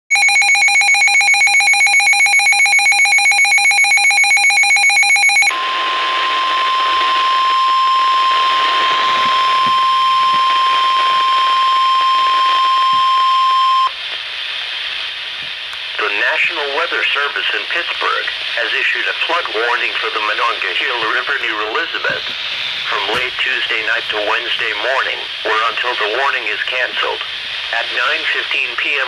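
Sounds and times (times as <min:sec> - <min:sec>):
steady warning alarm tone: 0:00.1 - 0:14.0
radio hiss: 0:05.5 - 0:29.0.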